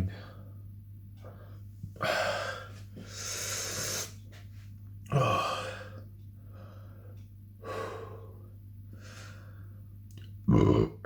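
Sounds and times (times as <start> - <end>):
man breathing hard: 1.3 - 4.2, 5.2 - 9.9.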